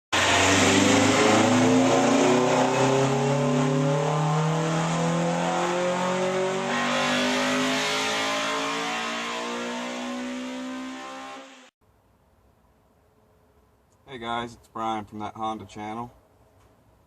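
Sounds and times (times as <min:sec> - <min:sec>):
car engine accelerating: 0:00.2 - 0:11.7.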